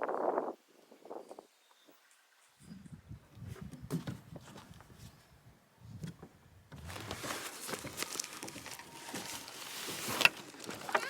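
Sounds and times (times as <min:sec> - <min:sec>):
fabric bag rustling and crinkling: 0:06.8 - 0:11.0.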